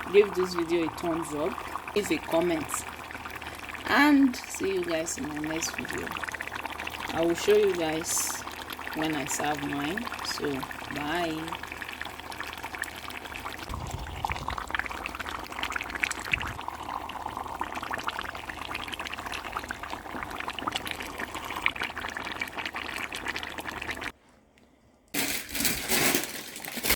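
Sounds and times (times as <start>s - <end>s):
sauce bubbling in a pot: 0.0s - 24.2s
loud burst of sound: 13.7s - 15.4s.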